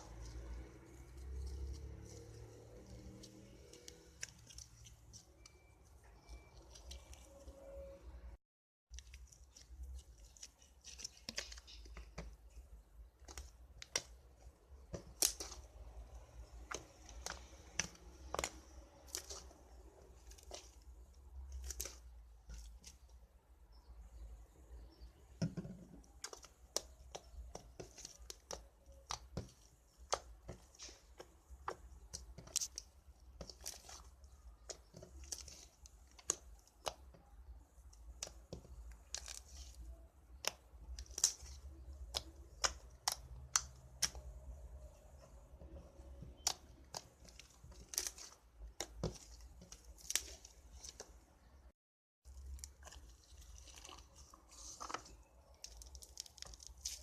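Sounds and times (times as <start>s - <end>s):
slime crackling and popping: 14.8s - 23.1s, 26.0s - 44.8s, 46.1s - 51.2s, 52.3s - 57.0s.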